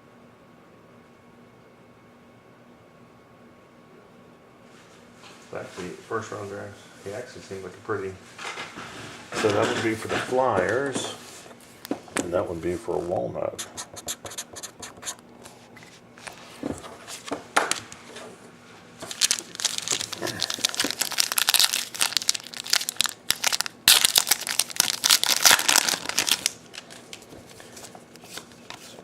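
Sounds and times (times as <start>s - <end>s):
wrappers crinkling and crumpling: 19.0s - 29.0s.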